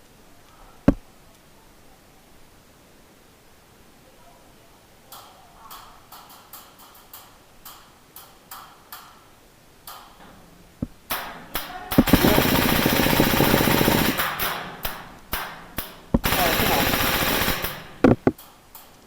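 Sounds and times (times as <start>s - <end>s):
loud snaps: 13.4s - 18.4s.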